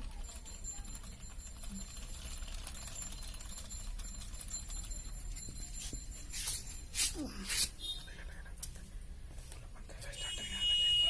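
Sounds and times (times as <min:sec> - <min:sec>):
winding machine gears clicking: 0:00.0 - 0:07.0.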